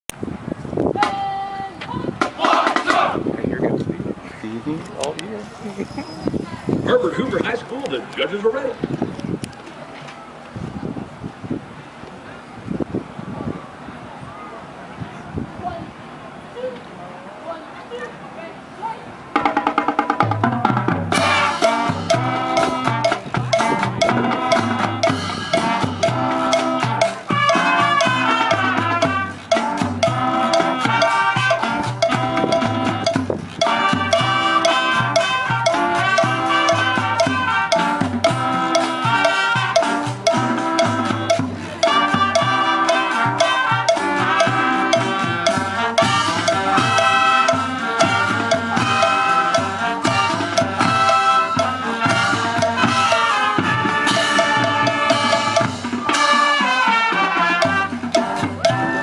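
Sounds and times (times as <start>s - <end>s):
drums and percussion: 1.0s - 3.5s, 19.3s - 59.0s
band playing latin-style music: 19.4s - 59.0s.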